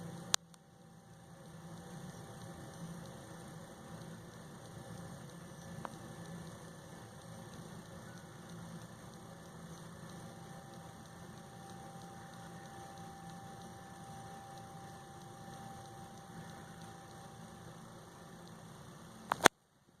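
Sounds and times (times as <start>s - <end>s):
faint high steady tone: 0.0s - 20.0s
low electrical hum with hiss: 0.0s - 20.0s
sharp click: 19.3s - 19.6s.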